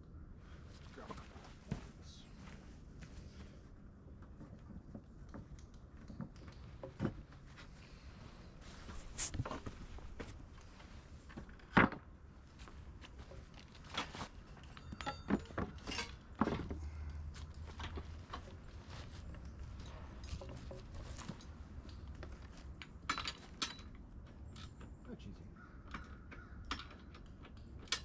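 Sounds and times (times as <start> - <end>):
metallic ring: 14.5 - 16.2
wrench clinking on metal: 14.6 - 16.3.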